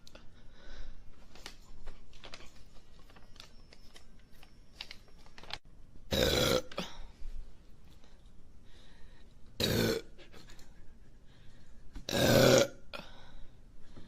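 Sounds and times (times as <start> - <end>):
loud burp: 6.1 - 6.9, 9.6 - 10.1, 12.1 - 13.0.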